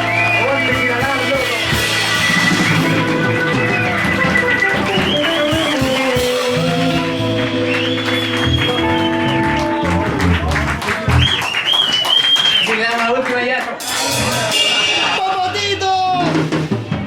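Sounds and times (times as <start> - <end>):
high lead guitar melody bending: 0.0 - 11.2
live rock band playing: 0.0 - 12.7, 13.6 - 17.0.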